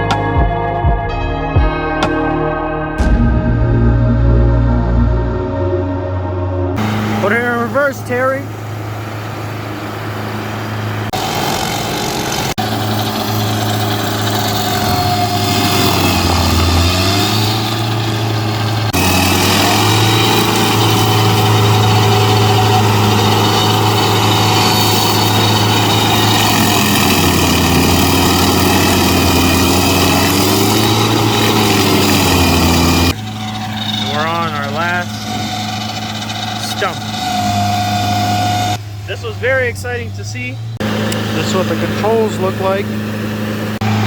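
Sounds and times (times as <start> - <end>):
stump grinder engine running hard: 6.8 - 7.7, 11.1 - 44.0.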